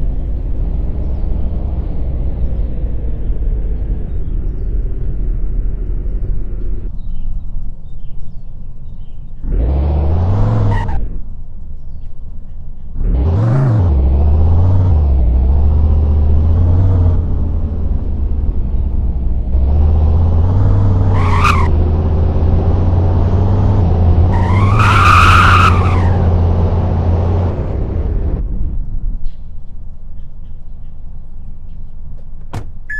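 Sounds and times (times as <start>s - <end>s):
car engine revving: 9.4s - 11.0s, 13.0s - 28.4s
tyre squeal: 21.0s - 21.7s, 24.3s - 26.3s.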